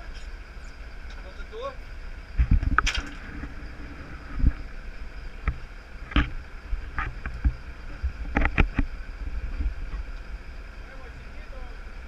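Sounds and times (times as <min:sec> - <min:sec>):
low rumble of wind and water: 0:00.0 - 0:12.0.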